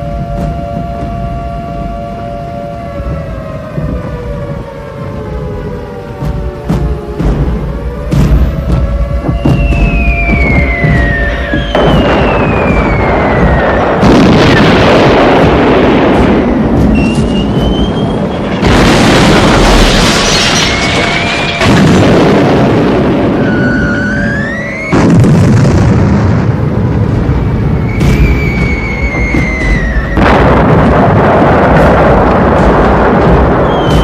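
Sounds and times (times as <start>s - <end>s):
heavy explosions: 2.9s - 34.0s
bomb whistling: 8.0s - 15.0s, 16.4s - 21.6s, 23.4s - 25.2s, 27.3s - 30.8s, 33.3s - 34.0s.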